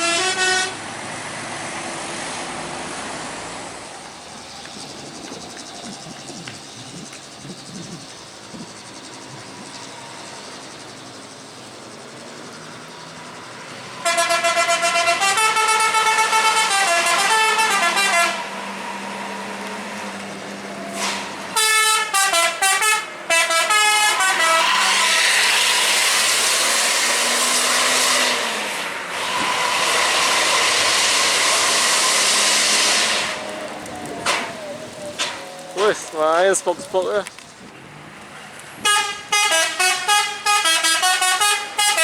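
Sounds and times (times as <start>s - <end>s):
musical bus air horns: 0.0s - 0.9s, 14.0s - 18.9s, 20.9s - 34.5s, 38.8s - 42.0s
loud steady hiss: 28.6s - 37.2s.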